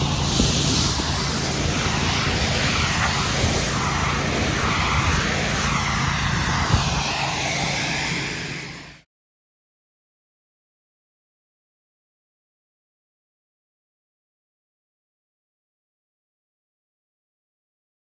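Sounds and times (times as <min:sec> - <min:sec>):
pressure washer running: 0:00.0 - 0:09.0.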